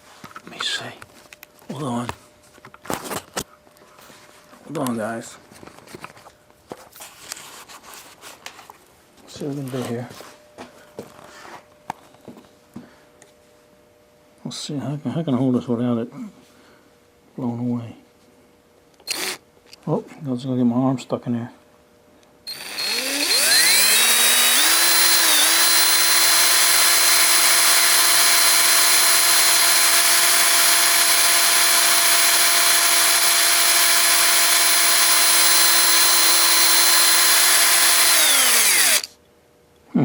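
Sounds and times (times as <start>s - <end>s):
cordless drill motor whine: 19.0s - 19.4s, 22.5s - 39.1s.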